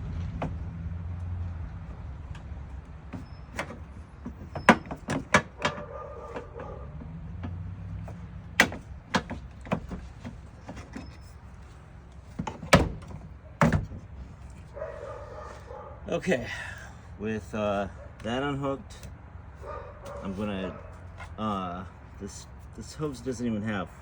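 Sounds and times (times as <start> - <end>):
clicks of hand tools and plastic parts: 2.3 - 11.3, 12.1 - 14.7.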